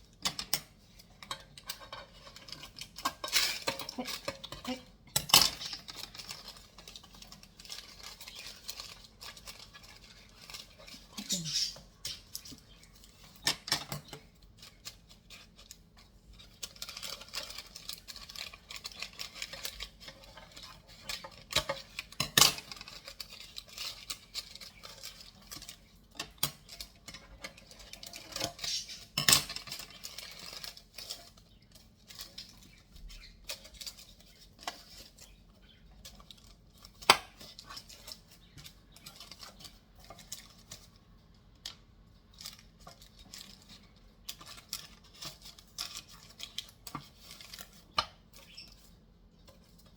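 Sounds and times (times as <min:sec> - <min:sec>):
utensils and dishes clinking: 0:00.2 - 0:15.7, 0:16.5 - 0:32.6.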